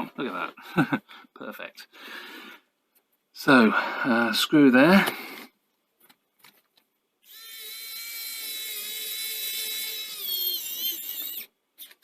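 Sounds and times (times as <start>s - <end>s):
electric screwdriver whining: 7.3s - 12.0s.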